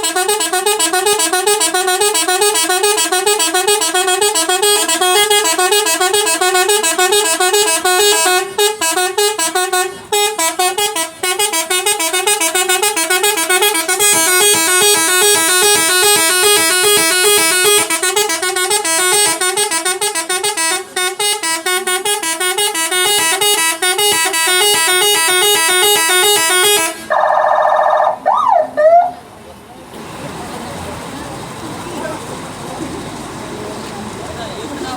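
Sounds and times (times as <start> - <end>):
steady horn blast: 0.0 - 28.0
bus musical horns: 0.0 - 29.2.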